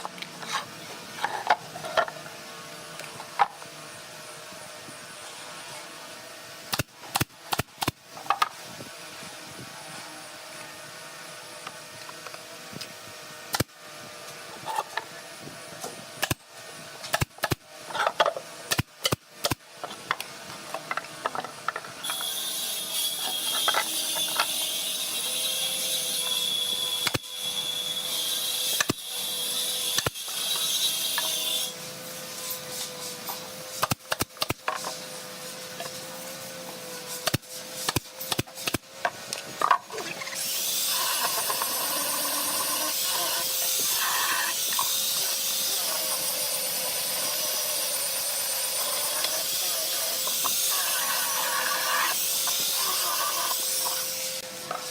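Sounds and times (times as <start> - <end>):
woodworking tools clicking and knocking: 0.0 - 2.2, 6.7 - 8.6, 17.1 - 22.4, 23.2 - 24.8, 33.2 - 35.0, 36.7 - 41.9, 50.2 - 50.7.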